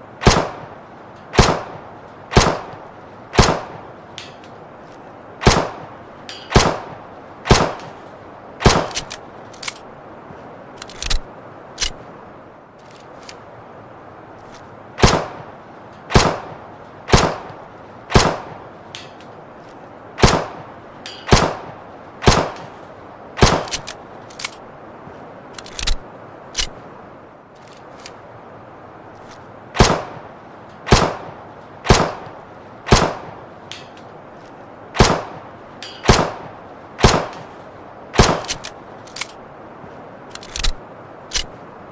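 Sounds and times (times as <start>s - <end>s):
pistol shots: 0.2s - 0.6s, 1.4s - 2.7s, 3.4s - 3.8s, 5.4s - 5.8s, 6.5s - 6.9s, 7.5s - 7.9s, 8.6s - 9.1s, 15.0s - 15.4s, 16.1s - 16.5s, 17.1s - 17.5s, 18.1s - 18.5s, 20.2s - 20.6s, 21.3s - 22.7s, 29.8s - 30.2s, 30.9s - 32.2s, 32.9s - 33.3s, 35.0s - 35.4s, 36.0s - 37.5s, 38.2s - 38.6s.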